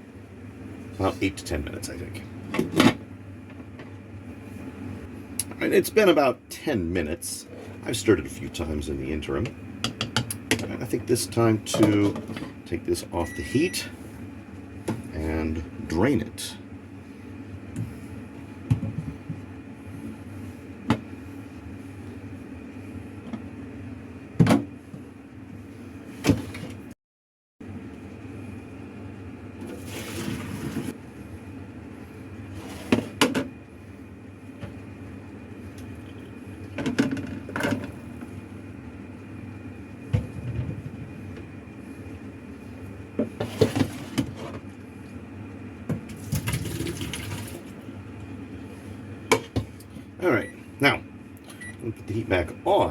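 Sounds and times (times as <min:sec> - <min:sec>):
steady background hum: 0:00.0 - 0:27.0, 0:27.6 - 0:52.9.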